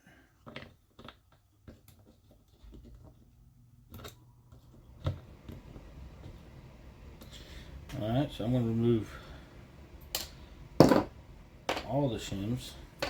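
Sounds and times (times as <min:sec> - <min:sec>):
small parts clicking and knocking: 0:00.3 - 0:03.3.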